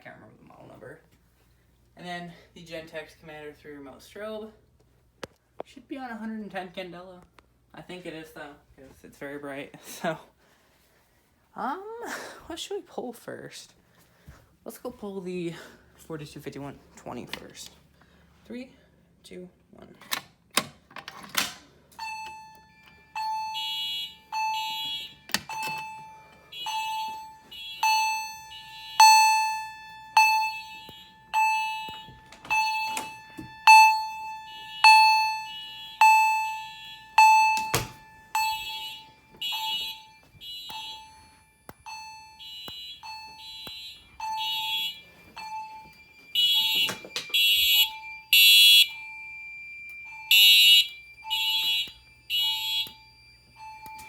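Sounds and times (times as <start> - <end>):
pulsing alarm signals: 22.0 - 54.0
ringing chime tone: 22.0 - 54.0.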